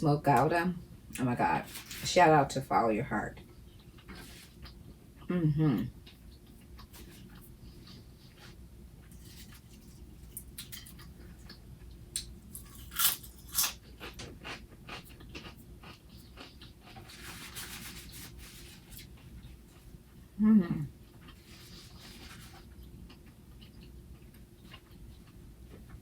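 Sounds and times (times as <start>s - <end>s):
low room hum: 0.0s - 26.0s
person chewing with mouth smacks: 6.0s - 17.2s, 21.1s - 26.0s.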